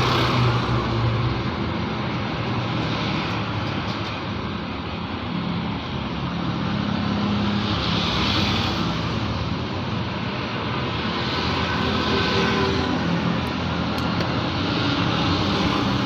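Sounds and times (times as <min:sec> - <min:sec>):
road traffic: 0:00.0 - 0:16.0.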